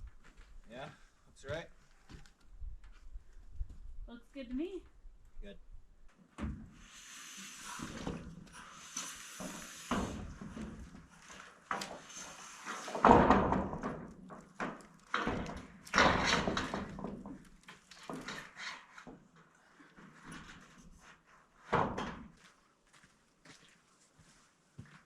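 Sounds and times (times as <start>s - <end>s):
roofing panels thumping: 7.8s - 18.5s.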